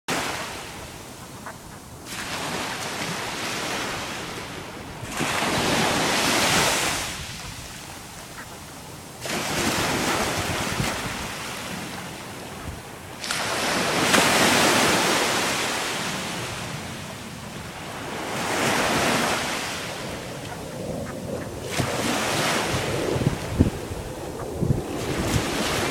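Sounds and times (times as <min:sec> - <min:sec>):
ocean waves breaking: 0:00.1 - 0:25.9.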